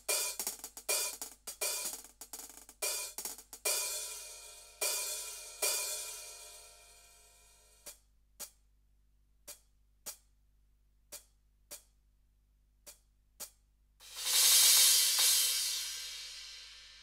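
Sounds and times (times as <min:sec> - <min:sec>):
soft hi-hat ticks: 0:00.0 - 0:06.8, 0:07.8 - 0:08.7, 0:09.4 - 0:10.4, 0:11.0 - 0:12.1, 0:12.8 - 0:17.0
loud cymbal crash: 0:14.0 - 0:17.0.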